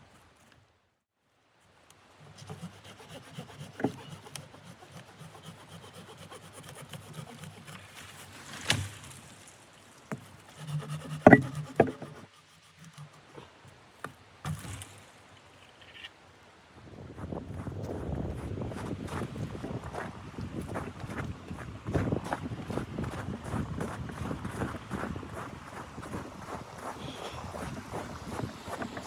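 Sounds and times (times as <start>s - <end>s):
scraping and rubbing: 10.1s - 13.5s, 26.8s - 29.0s.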